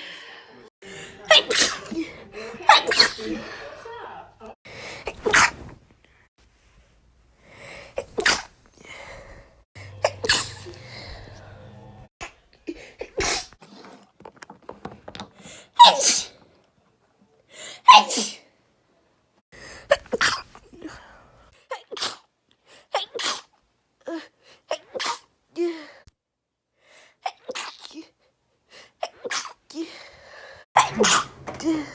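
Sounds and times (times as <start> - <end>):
woman sneezing: 1.3 - 2.0, 2.7 - 3.5, 15.8 - 16.3, 17.8 - 18.4, 24.8 - 25.3.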